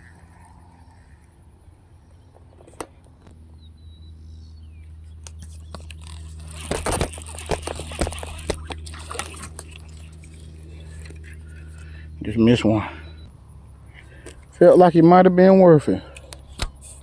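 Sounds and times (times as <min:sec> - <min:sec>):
low motor hum: 0:00.0 - 0:17.0
faint bird chirps: 0:11.5 - 0:13.3.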